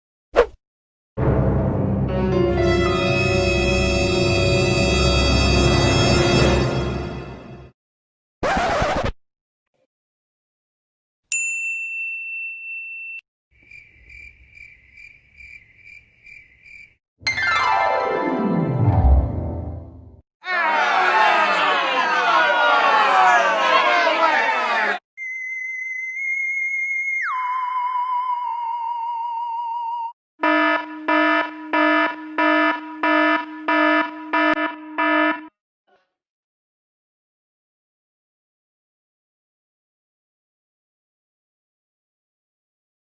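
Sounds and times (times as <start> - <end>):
bright ringing ding: 11.3 - 13.2
crickets chirping: 13.6 - 17.0
pulsing electronic alarm: 27.3 - 35.5.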